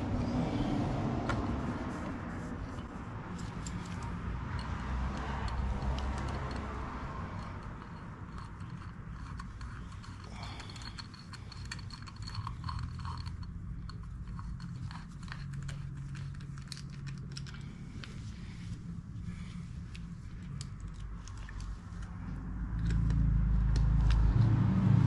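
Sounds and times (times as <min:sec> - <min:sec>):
steady low hum: 0:00.0 - 0:25.0
metallic clicks of hand tools: 0:03.3 - 0:17.6.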